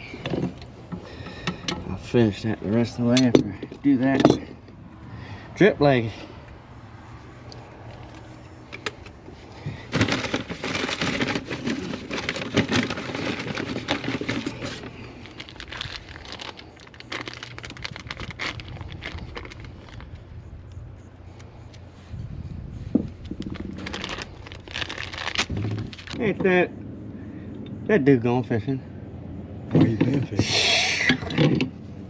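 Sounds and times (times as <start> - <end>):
clicks and scraping of pipe fittings: 0.0 - 4.8.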